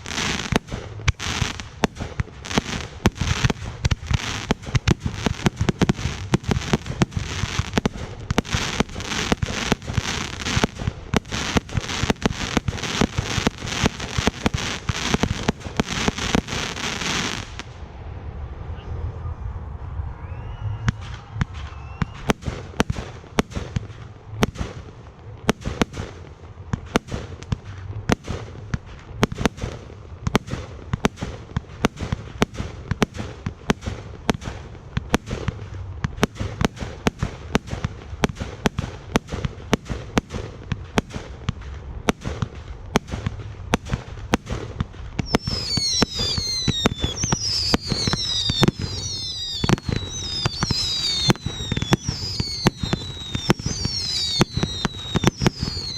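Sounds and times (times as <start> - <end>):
fireworks bangs: 0.0 - 55.9
low rumble: 17.4 - 24.4
shrill firework whistles: 18.7 - 22.7, 45.2 - 55.9.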